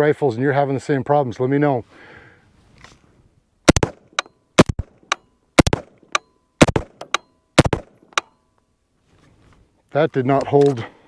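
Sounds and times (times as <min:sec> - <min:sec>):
rifle shots: 0:03.7 - 0:08.2.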